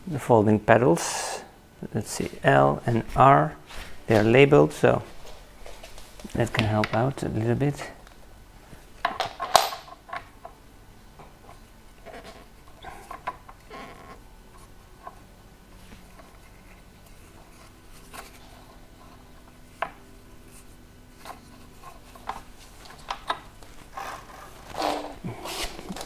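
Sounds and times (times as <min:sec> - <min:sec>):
rubbing and rustling: 0:02.2 - 0:06.8, 0:11.3 - 0:26.0.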